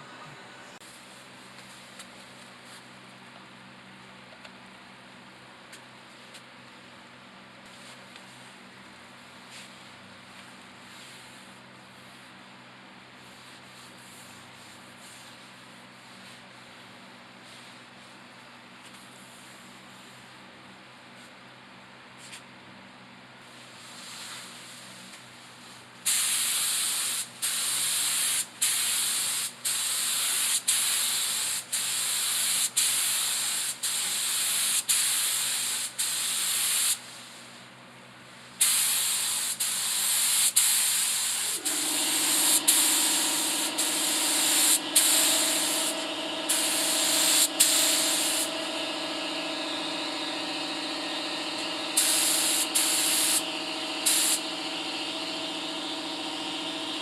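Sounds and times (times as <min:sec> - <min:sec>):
steady machine hum: 0:00.0 - 0:01.5, 0:40.9 - 0:57.0
paint spray gun hissing: 0:26.1 - 0:37.4, 0:38.6 - 0:57.0.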